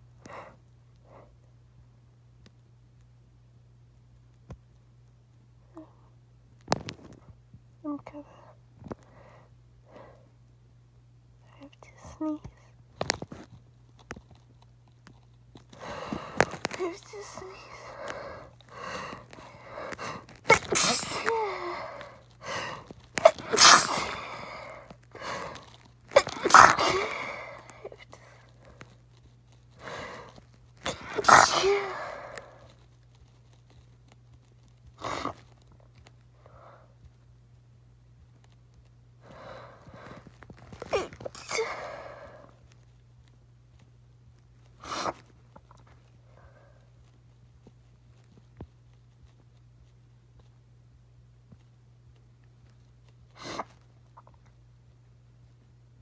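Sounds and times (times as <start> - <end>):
soft breaths: 5.6 - 10.4, 11.4 - 37.4, 38.2 - 50.6
person sneezing: 15.8 - 28.1, 29.8 - 32.6, 40.8 - 42.5, 44.8 - 45.2, 53.4 - 53.8.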